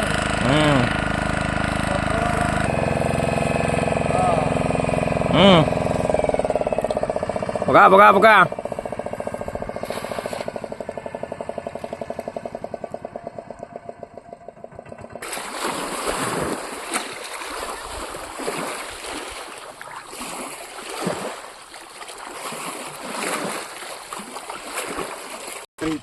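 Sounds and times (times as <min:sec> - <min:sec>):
boat engine running: 0:00.0 - 0:26.0
rushing splashing water: 0:08.5 - 0:10.7, 0:15.2 - 0:25.7.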